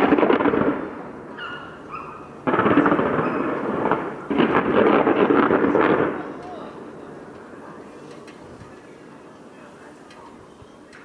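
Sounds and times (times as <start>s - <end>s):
fireworks bang: 0.0s - 8.7s
fireworks crackling: 0.0s - 11.0s.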